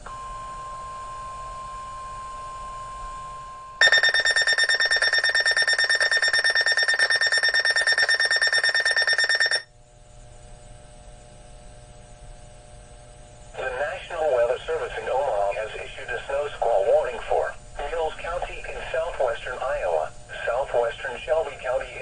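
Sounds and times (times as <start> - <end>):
steady alert tone: 3.8 - 9.6
rapidly pulsing electronic alarm: 3.8 - 9.7.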